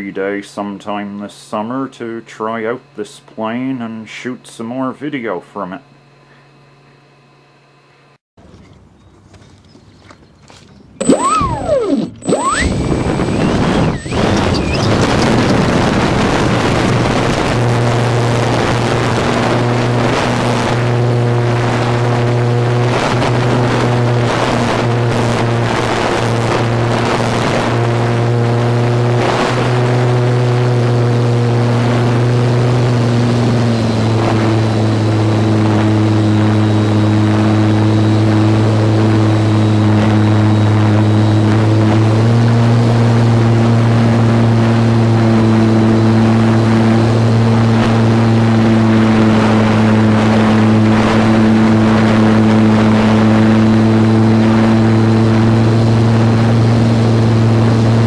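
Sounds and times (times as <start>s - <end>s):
model plane propeller droning: 11.0s - 58.0s.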